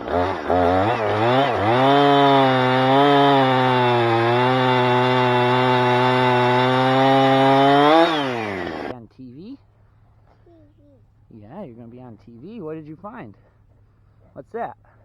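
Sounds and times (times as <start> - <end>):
chainsaw cutting log: 0.0 - 8.9.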